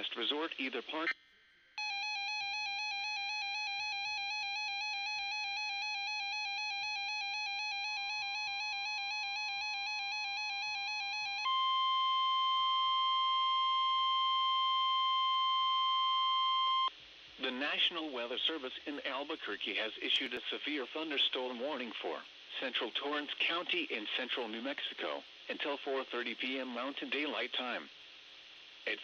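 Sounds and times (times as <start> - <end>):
steady high alarm tone: 1.8 - 16.9.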